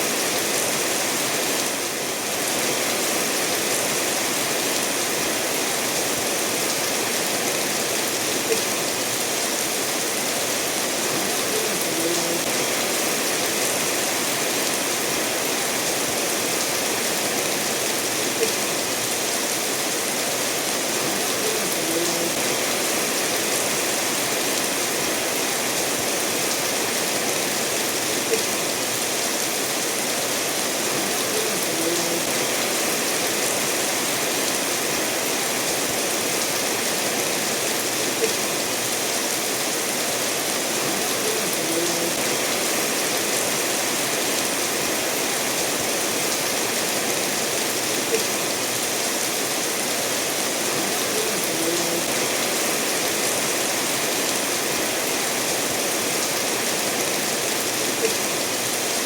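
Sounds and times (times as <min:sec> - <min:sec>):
steady rainfall: 0:00.0 - 0:59.0
stream running over stones: 0:00.0 - 0:59.0.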